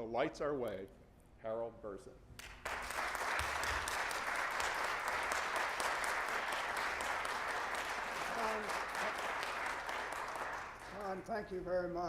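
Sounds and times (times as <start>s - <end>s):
audience applauding: 2.4s - 11.4s.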